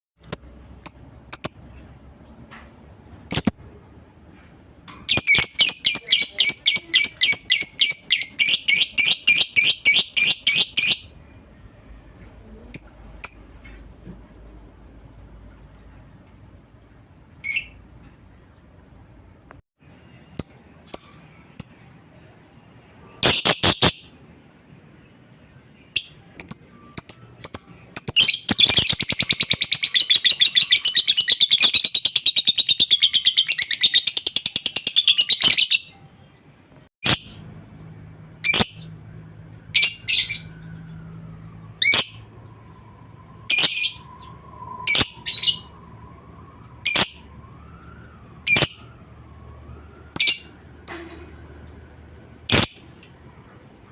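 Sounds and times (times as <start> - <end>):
lovebird chirps: 0.2 - 1.8, 3.3 - 3.8, 5.1 - 11.1, 20.4 - 21.9, 43.5 - 45.8, 52.5 - 53.3.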